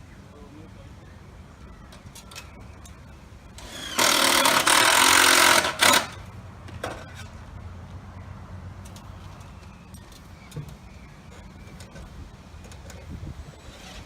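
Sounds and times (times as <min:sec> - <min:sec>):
power tool bursts: 0:03.6 - 0:06.2.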